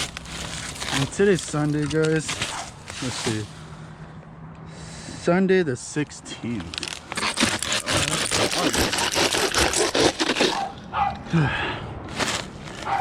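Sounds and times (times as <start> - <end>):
dry leaf crackling: 0.0 - 3.6, 12.1 - 13.0
handsaw rasping: 6.8 - 10.9.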